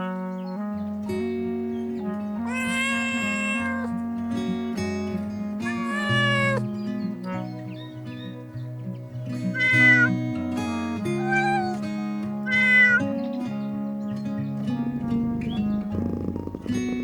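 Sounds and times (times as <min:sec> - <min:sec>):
plucked guitar music: 0:00.4 - 0:17.0
cat meowing: 0:02.4 - 0:04.0, 0:05.6 - 0:06.7, 0:09.5 - 0:10.2, 0:11.0 - 0:11.8, 0:12.5 - 0:13.1.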